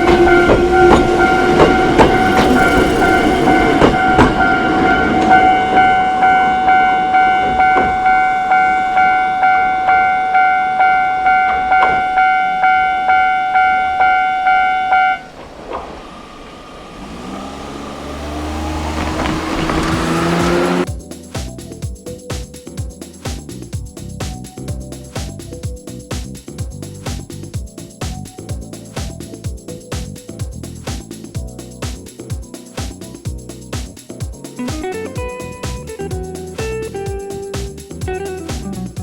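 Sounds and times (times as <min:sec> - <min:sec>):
train clattering over rail joints: 0:00.0 - 0:06.0
vehicle hum: 0:00.0 - 0:06.7, 0:15.2 - 0:20.9
level-crossing bell ringing: 0:00.0 - 0:15.2.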